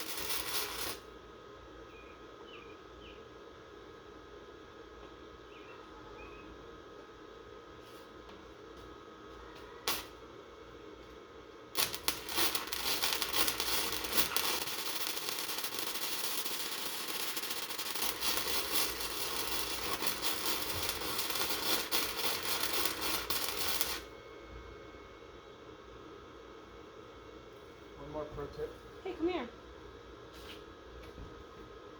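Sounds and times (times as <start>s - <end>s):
welding arc crackling: 0.0s - 1.0s, 9.8s - 10.2s, 11.7s - 24.1s.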